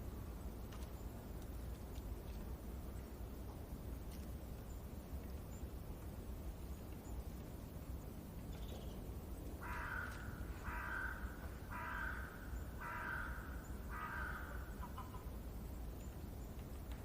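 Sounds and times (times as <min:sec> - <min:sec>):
bird calling: 0:09.6 - 0:15.4.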